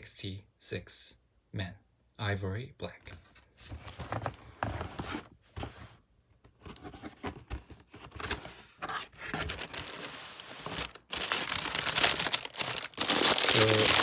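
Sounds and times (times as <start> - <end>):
cardboard box rustling: 3.3 - 14.0.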